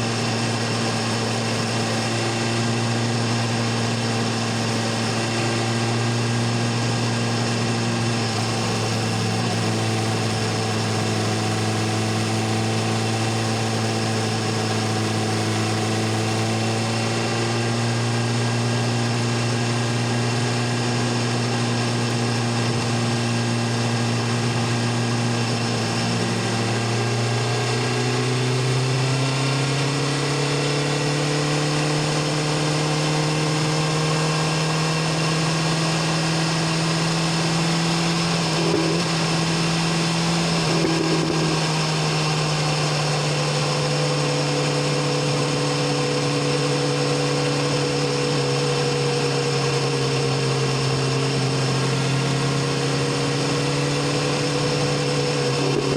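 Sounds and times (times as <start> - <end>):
motorcycle engine cruising: 0.0 - 55.9
wind and road rush: 31.6 - 55.9.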